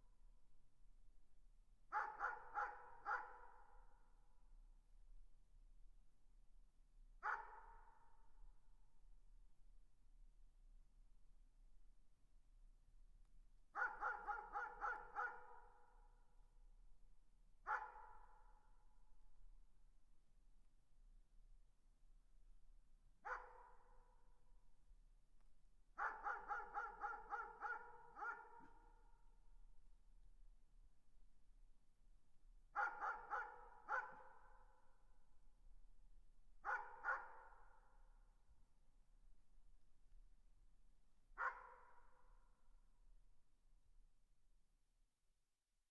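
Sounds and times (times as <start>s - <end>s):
dog barking with echo: 1.9s - 3.8s, 7.2s - 8.0s, 13.8s - 16.0s, 17.6s - 18.5s, 23.2s - 24.0s, 26.0s - 29.2s, 32.8s - 34.7s, 36.6s - 38.0s, 41.4s - 42.4s.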